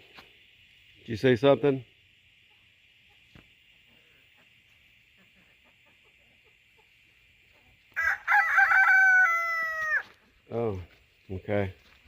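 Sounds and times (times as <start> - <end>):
chickens clucking: 2.5 - 8.0.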